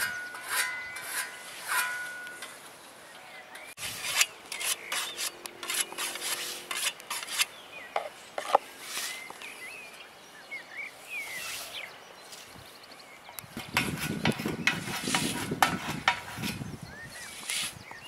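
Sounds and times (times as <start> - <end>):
scythe swishing through grass: 3.8 - 7.5, 8.7 - 9.3, 11.0 - 12.5, 14.7 - 16.4, 17.2 - 17.8.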